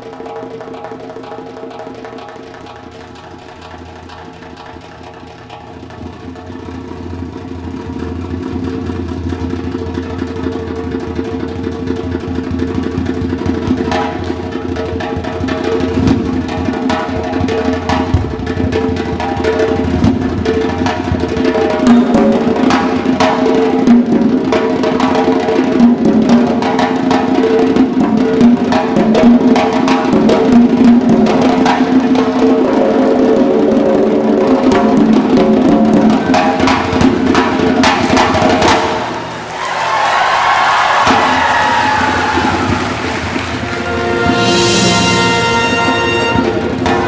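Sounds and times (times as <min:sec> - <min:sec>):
rapid drum strokes: 0:00.0 - 0:47.0
orchestra playing: 0:42.5 - 0:47.0.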